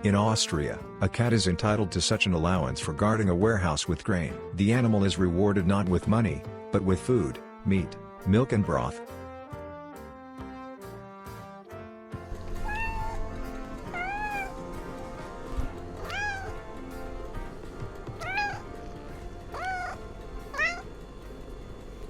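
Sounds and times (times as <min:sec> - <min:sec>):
brass music: 0:04.4 - 0:22.0
cat meowing: 0:12.4 - 0:17.2, 0:18.0 - 0:20.9.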